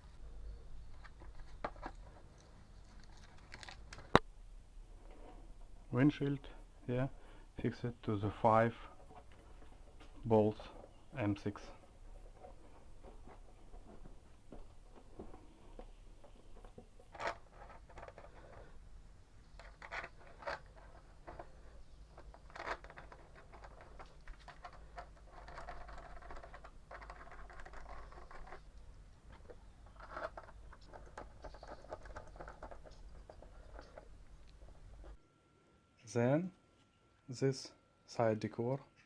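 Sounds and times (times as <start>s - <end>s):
scraping and rustling: 0.0s - 4.2s, 11.6s - 18.8s, 19.4s - 35.2s.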